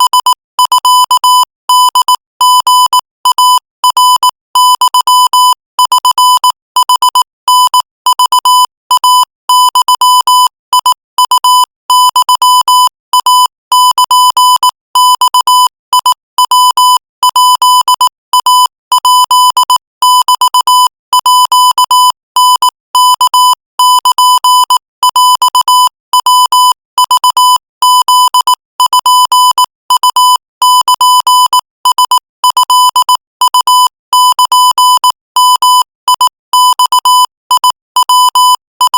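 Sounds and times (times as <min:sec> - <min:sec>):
morse code beeps: 0:00.0 - 0:38.9.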